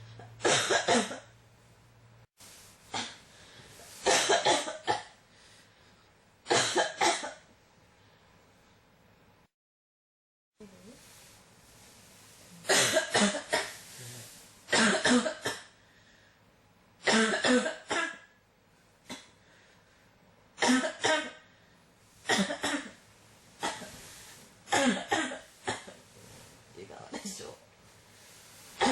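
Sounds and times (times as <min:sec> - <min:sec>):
person coughing harshly: 0:00.4 - 0:01.3, 0:02.9 - 0:03.2, 0:04.0 - 0:05.2, 0:06.5 - 0:07.4, 0:12.6 - 0:13.8, 0:14.7 - 0:15.8, 0:17.0 - 0:18.3, 0:20.6 - 0:21.4, 0:22.3 - 0:23.0, 0:23.6 - 0:24.0, 0:24.7 - 0:26.0, 0:27.1 - 0:27.6.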